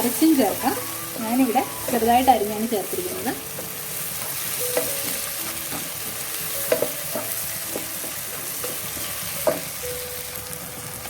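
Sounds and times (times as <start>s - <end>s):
vegetables sizzling in oil: 0.0s - 11.0s.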